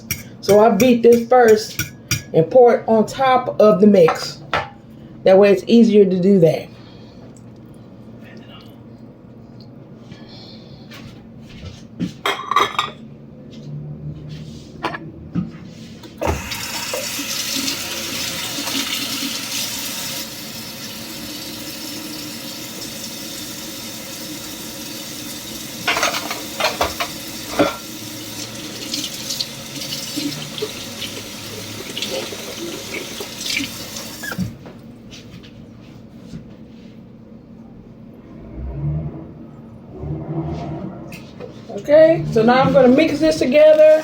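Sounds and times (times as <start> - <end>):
water running: 16.2 - 34.9.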